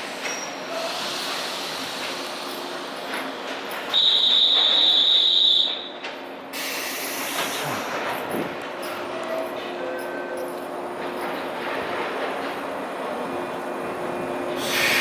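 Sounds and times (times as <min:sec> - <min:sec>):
train hiss: 0:00.0 - 0:03.0, 0:06.5 - 0:08.0, 0:14.5 - 0:15.0
electric train setting off: 0:13.1 - 0:15.0.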